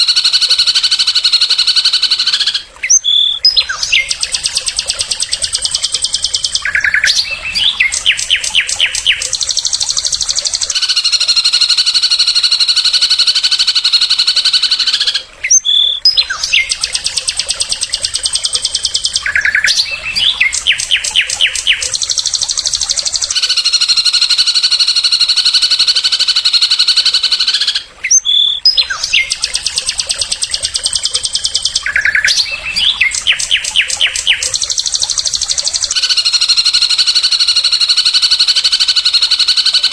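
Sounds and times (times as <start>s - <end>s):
songbird trill: 0.0s - 12.4s, 15.4s - 23.8s, 28.1s - 36.8s
buzzy bird whistle: 0.0s - 39.9s.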